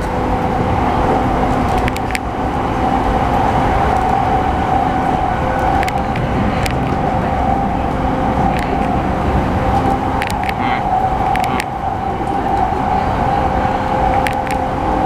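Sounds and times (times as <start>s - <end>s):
electric train rumble and hum: 0.0s - 15.0s.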